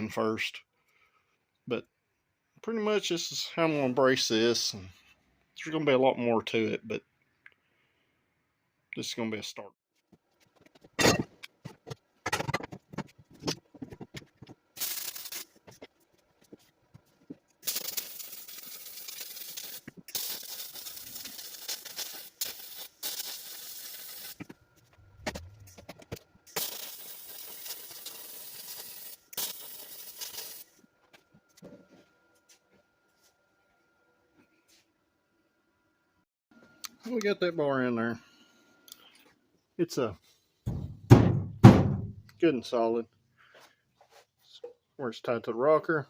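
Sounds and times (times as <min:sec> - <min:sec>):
arc welding crackling hiss: 0:14.8 - 0:15.6, 0:17.6 - 0:24.4, 0:26.5 - 0:30.7.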